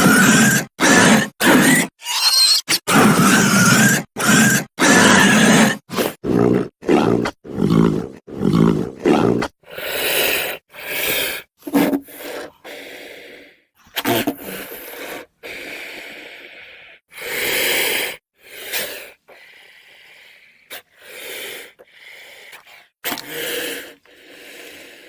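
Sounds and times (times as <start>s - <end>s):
creature hisses and snorts: 2.9s - 12.8s, 17.1s - 19.7s, 22.5s - 25.0s.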